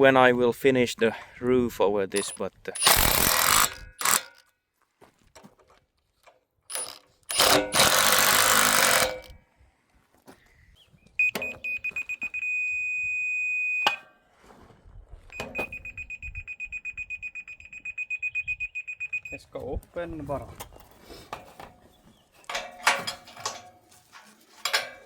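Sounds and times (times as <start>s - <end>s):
power tool running: 2.2s - 4.3s, 6.7s - 9.3s
high-pitched rapid beeps: 15.4s - 19.4s.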